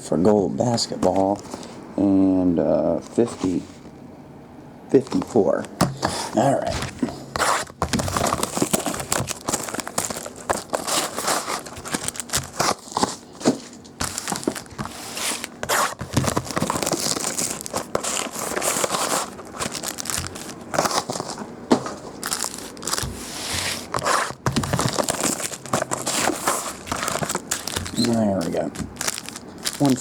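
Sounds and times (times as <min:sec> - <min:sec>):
plastic wrap tearing and crinkling: 0:07.4 - 0:30.0.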